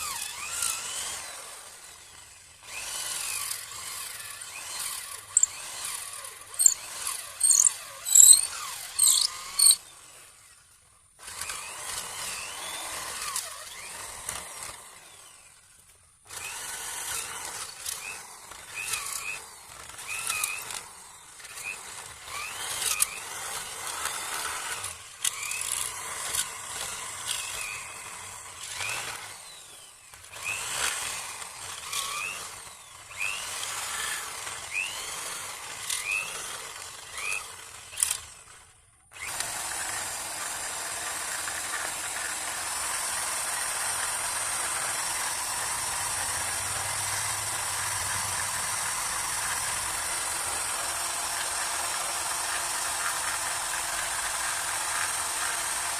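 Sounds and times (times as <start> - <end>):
electric drill boring into wood: 0.0 - 55.9
short squeaks: 6.5 - 6.8, 7.4 - 9.8.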